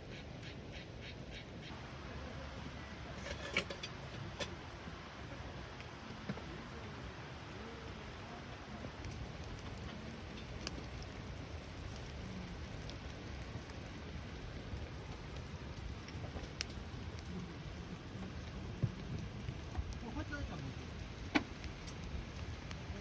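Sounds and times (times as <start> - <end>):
steady rain falling: 0.0 - 23.0
sharp raindrop hits: 9.0 - 23.0.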